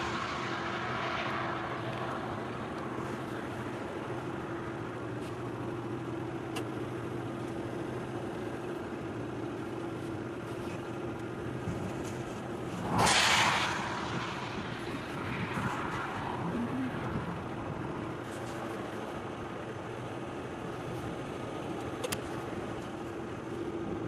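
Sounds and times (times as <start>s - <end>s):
loud rushing whoosh: 0.0s - 3.7s, 12.5s - 18.2s
vehicle engine and road noise: 0.0s - 24.0s.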